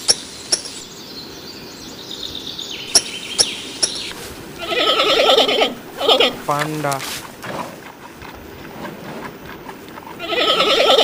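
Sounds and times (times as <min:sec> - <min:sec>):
songbird singing: 0:00.0 - 0:11.0
low animal call: 0:04.4 - 0:11.0.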